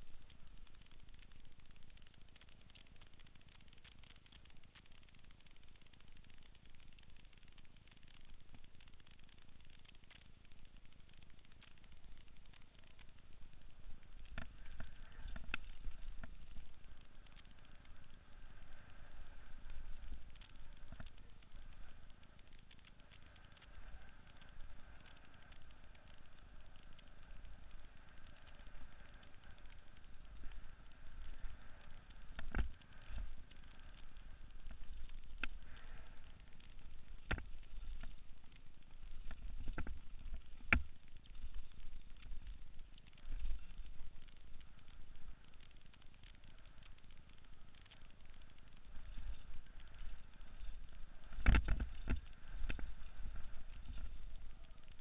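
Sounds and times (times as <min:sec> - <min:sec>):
wind rumble on microphone: 0:13.8 - 0:55.0.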